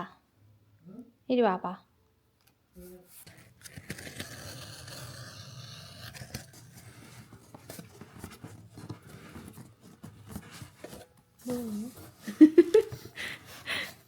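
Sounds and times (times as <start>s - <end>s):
rustling and scraping: 5.8s - 14.0s.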